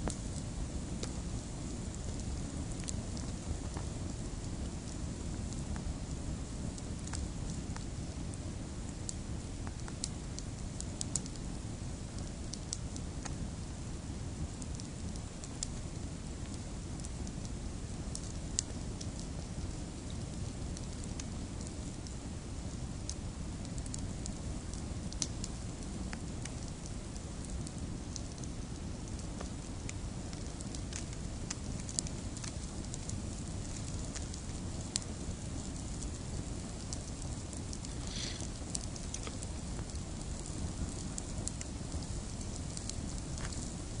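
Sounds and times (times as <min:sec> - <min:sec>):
campfire crackling and popping: 0:00.0 - 0:44.0
short hiss: 0:38.0 - 0:38.4.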